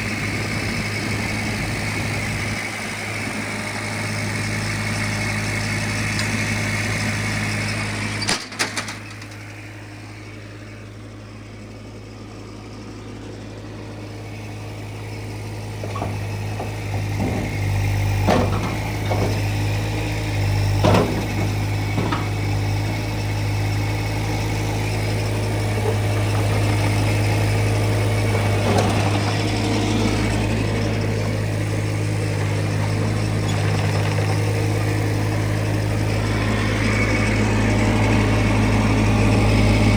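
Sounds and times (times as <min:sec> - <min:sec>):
diesel engine running: 0:00.0 - 0:39.9
short knocks or clanks: 0:15.7 - 0:23.7, 0:25.7 - 0:34.9.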